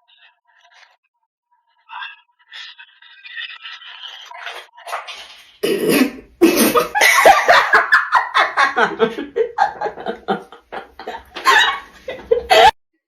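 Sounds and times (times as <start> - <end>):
loud human laughter: 6.4 - 12.8.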